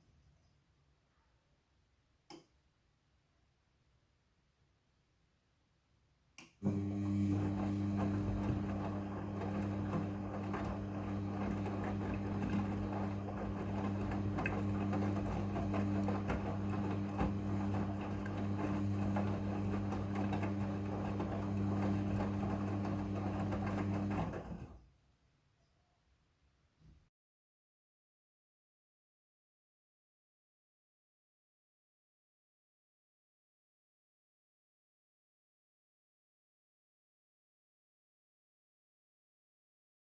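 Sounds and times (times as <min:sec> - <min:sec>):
washing machine running: 0:06.6 - 0:24.8.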